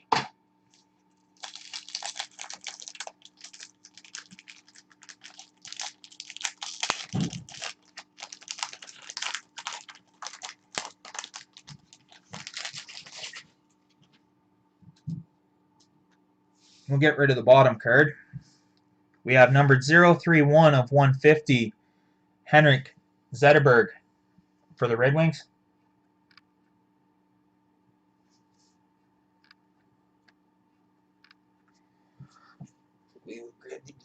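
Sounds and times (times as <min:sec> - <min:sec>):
card packaging rustling and crinkling: 0:01.4 - 0:13.5.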